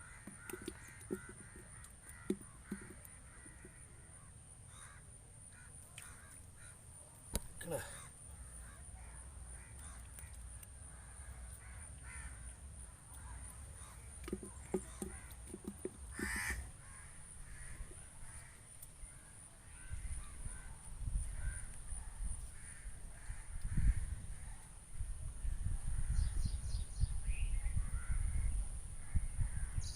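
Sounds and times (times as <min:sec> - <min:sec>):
crows cawing: 0:00.0 - 0:06.8, 0:07.7 - 0:12.6, 0:13.2 - 0:20.6.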